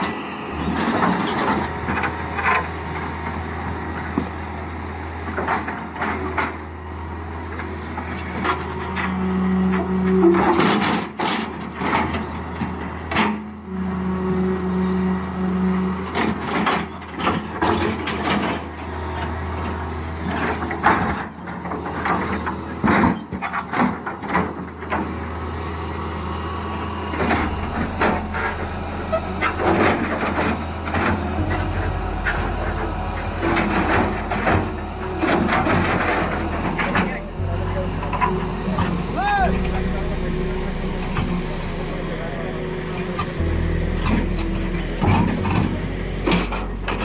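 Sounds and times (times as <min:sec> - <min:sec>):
steady pitched tone: 0:00.0 - 0:10.6, 0:25.0 - 0:47.0
heavy truck engine running: 0:00.0 - 0:47.0.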